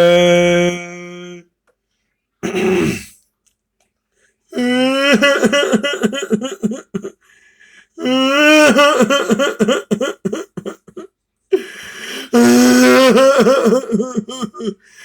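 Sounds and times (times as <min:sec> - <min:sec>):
person crying and sobbing: 0:00.0 - 0:01.4, 0:04.5 - 0:07.2, 0:08.0 - 0:15.0.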